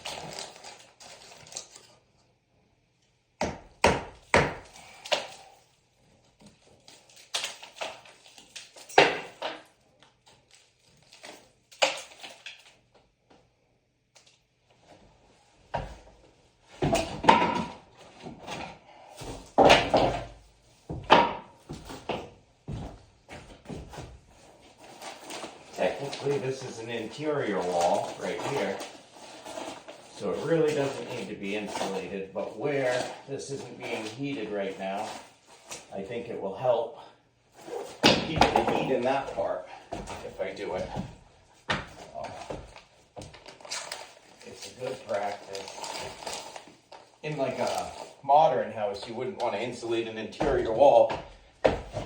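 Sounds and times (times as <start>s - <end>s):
rustling handling noise: 21.7s - 36.2s, 38.6s - 48.2s.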